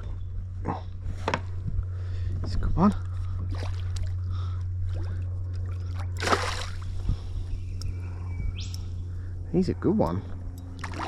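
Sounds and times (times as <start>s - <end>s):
steady low hum: 0.0s - 11.0s
water splash: 6.2s - 6.9s, 10.8s - 11.0s.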